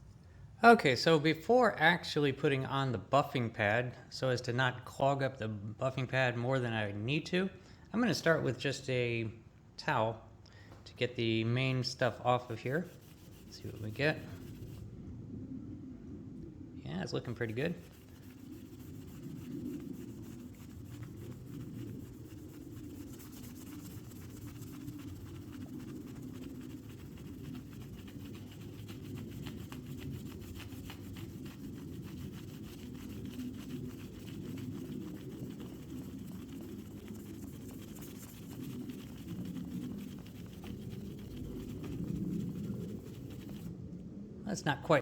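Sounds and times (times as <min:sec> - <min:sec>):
towel rubbing on metal surface: 0:11.9 - 0:14.9, 0:17.2 - 0:43.8.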